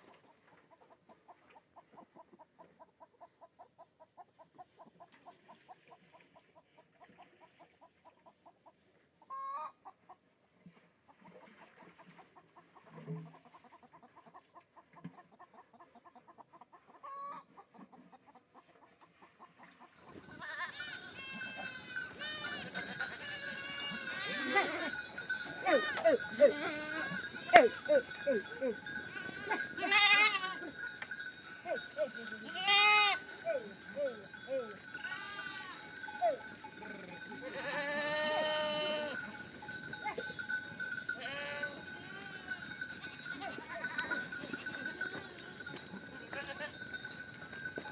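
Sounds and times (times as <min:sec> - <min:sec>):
goats bleating: 0:20.4 - 0:36.5, 0:37.4 - 0:39.4, 0:41.1 - 0:45.6, 0:46.2 - 0:46.8.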